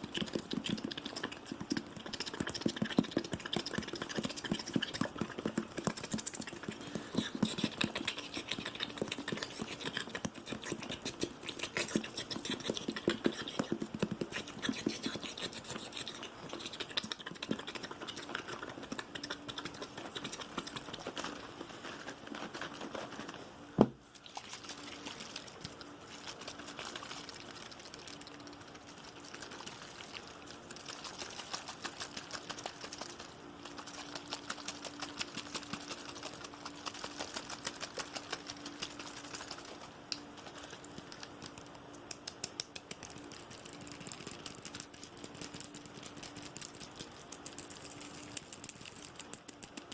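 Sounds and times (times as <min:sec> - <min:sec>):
rapid small tapping: 0:40.9 - 0:49.9.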